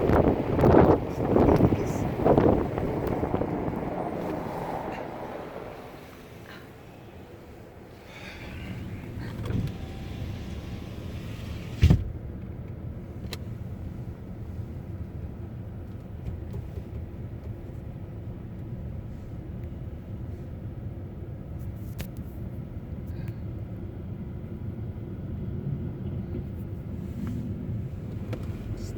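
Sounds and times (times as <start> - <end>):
low rumble: 0.0 - 15.8
loud thump: 11.8 - 12.2.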